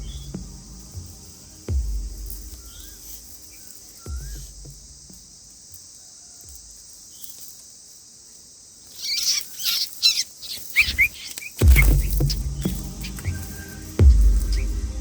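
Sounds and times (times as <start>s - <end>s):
deep bass thumps of music: 0.0s - 3.4s, 4.1s - 5.5s, 11.6s - 15.0s
high insect drone: 0.0s - 15.0s.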